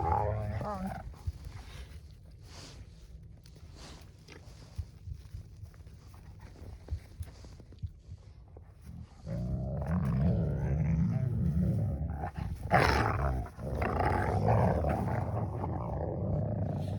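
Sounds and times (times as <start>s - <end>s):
puppies growling and snarling: 0.0s - 1.6s, 8.8s - 16.9s.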